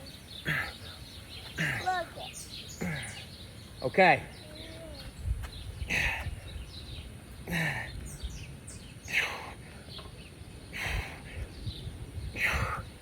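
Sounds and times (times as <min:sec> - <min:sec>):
man breathing hard: 0:05.8 - 0:06.6, 0:07.4 - 0:08.2, 0:10.7 - 0:11.7, 0:12.3 - 0:13.0.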